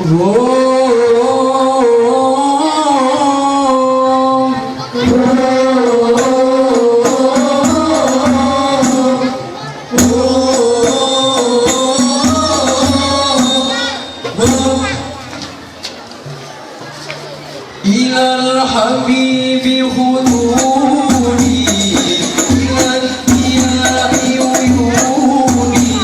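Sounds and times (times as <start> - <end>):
frame drums striking: 6.1 - 9.3, 9.9 - 15.6, 20.2 - 26.0.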